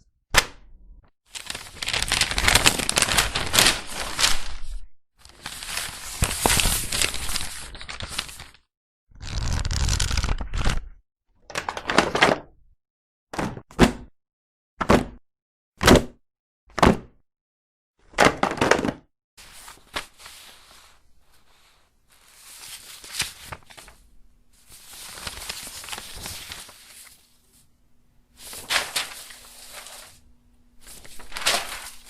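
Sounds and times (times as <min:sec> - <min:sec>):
paper rustling and crinkling: 0:01.3 - 0:10.9, 0:18.4 - 0:24.0, 0:24.6 - 0:27.7, 0:28.4 - 0:32.0.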